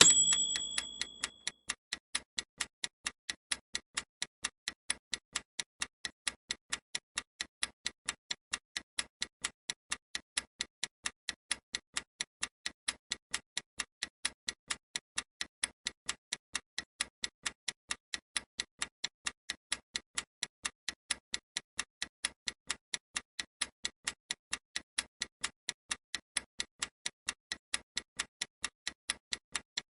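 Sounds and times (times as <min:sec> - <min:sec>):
analog clock ticking: 0:00.0 - 0:16.2.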